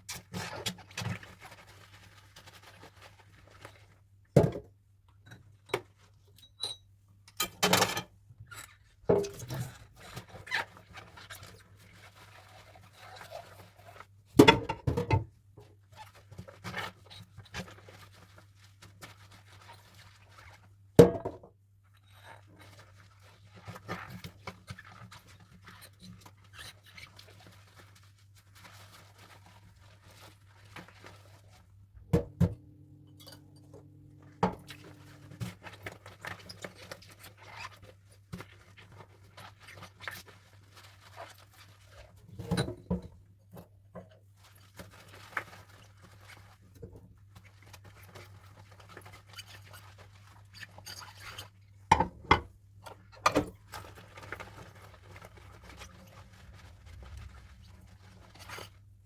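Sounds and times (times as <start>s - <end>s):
faint low hum: 32.0s - 35.8s
dishes scraping and rubbing: 32.0s - 37.7s.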